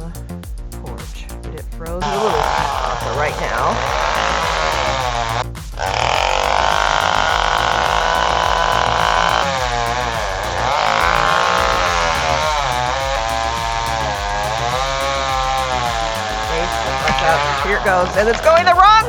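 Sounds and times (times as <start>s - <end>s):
chainsaw running at high revs: 2.1s - 19.0s.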